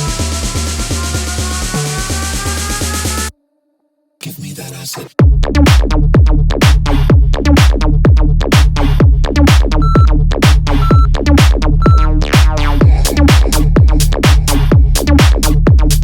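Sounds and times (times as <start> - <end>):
electronic dance music: 0.0 - 3.3, 9.5 - 16.0.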